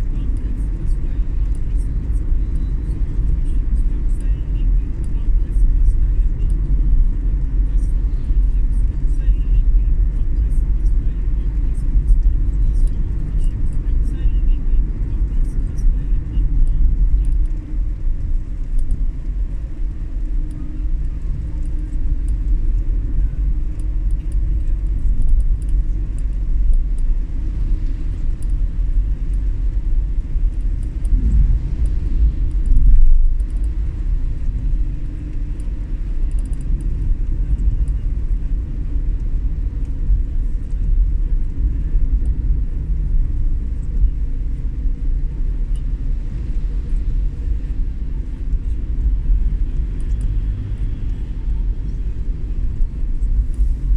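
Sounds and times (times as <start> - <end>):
vehicle rumbling on the move: 0.0 - 53.9.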